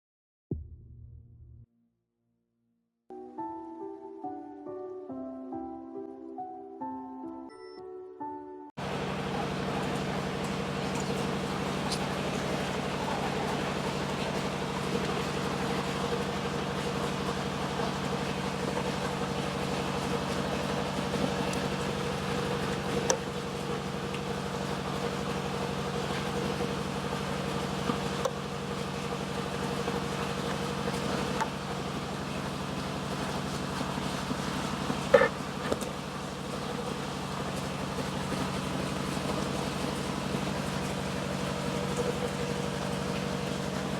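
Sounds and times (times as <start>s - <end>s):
low mechanical hum: 8.8s - 43.9s.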